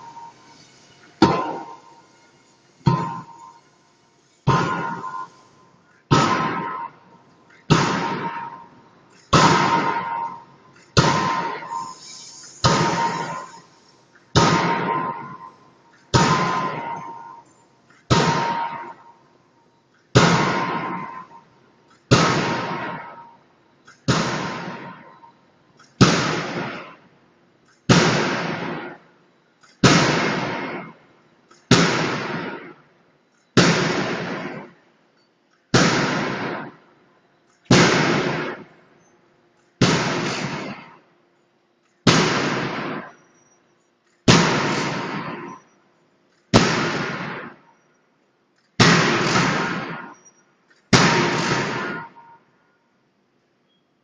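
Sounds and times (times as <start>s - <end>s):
forging hammer blows ringing: 0.0s - 27.0s, 39.8s - 41.0s, 44.3s - 45.8s, 48.8s - 52.5s.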